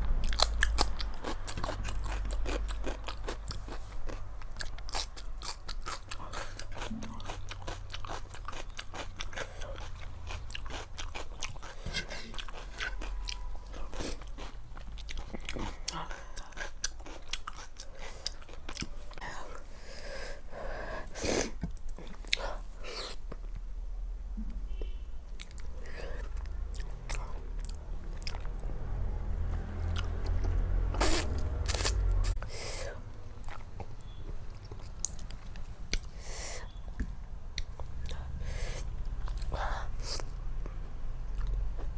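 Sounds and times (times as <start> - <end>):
chewing and biting food: 0.0 - 19.2, 25.4 - 28.7, 29.5 - 32.4, 33.4 - 36.1, 39.2 - 39.6.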